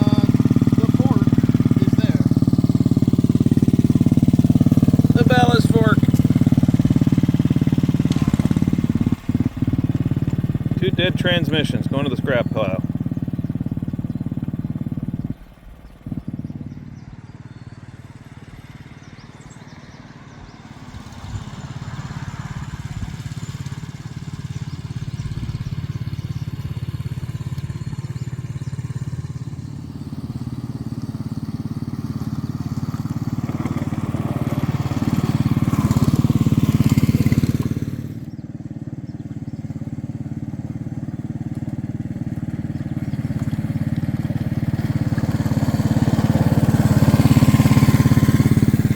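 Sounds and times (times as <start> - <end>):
machine engine running: 0.0 - 16.8, 20.7 - 48.9.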